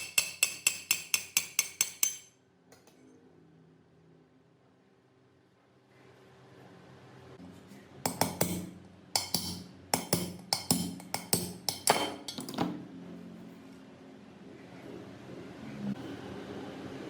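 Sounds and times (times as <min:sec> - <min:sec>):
tool striking machine part: 0:00.0 - 0:02.3, 0:08.1 - 0:12.8.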